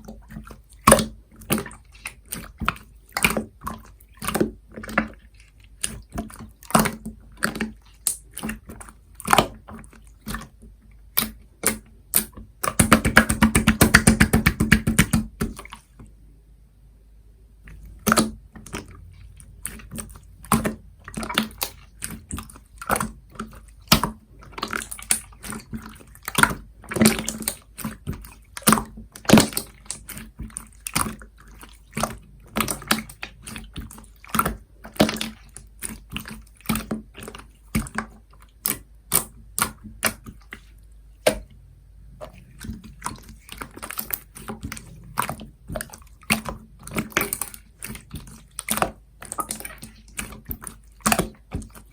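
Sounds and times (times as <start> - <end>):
slime clicking and popping: 11.1 - 15.6.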